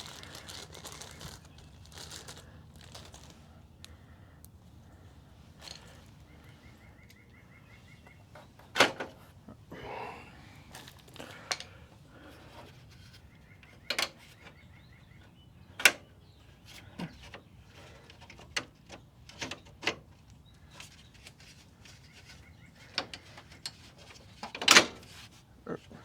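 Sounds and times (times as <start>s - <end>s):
hand tools clicking and knocking: 13.6s - 14.5s.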